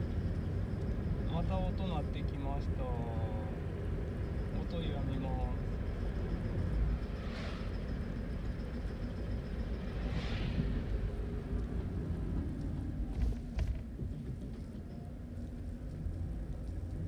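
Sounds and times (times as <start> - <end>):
brief whooshes: 9.9 - 10.9.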